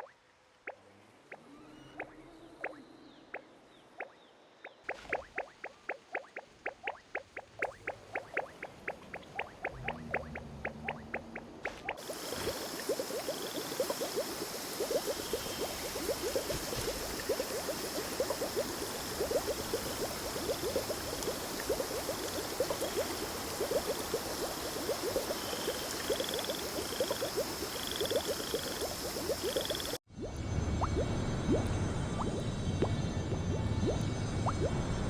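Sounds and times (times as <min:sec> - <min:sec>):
frogs croaking: 0:04.0 - 0:30.0.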